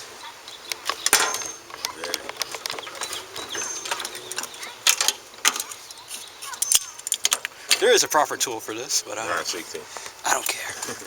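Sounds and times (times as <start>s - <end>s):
hand tools clanking on metal: 0.7s - 7.9s.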